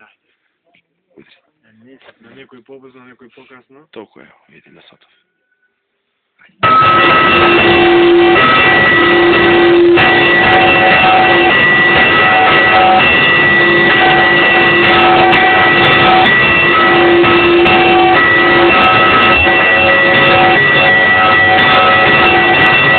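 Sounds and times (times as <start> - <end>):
church bells clanging: 6.6 - 22.9.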